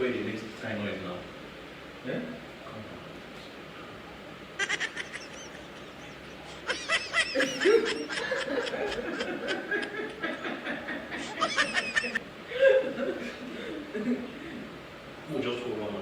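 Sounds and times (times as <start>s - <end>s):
bursts of laughter: 4.6s - 14.2s.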